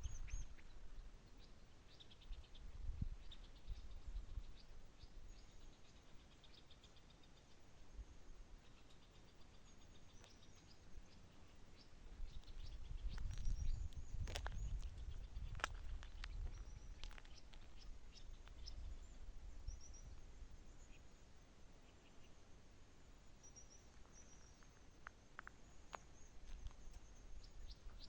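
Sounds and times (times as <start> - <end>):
small birds chirping and trilling: 0.0 - 28.0.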